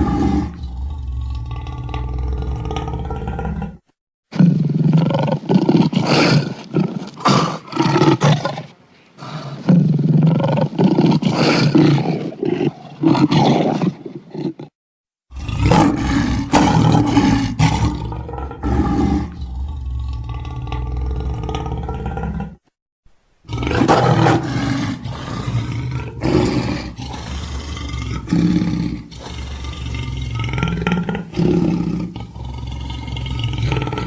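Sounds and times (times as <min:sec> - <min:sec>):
big cat creature roaring: 0:00.0 - 0:03.8, 0:15.3 - 0:22.6, 0:23.5 - 0:34.0.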